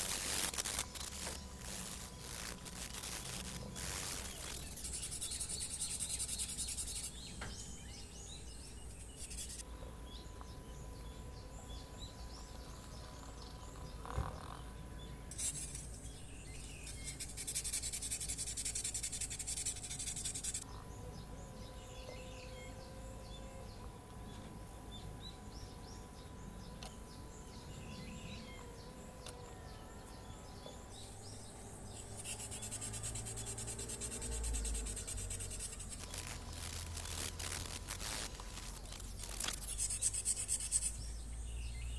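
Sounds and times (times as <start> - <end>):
sandpaper rubbing: 0.0 - 7.1, 16.9 - 20.6, 32.1 - 41.0
small high chirps: 0.0 - 7.5, 28.6 - 41.2.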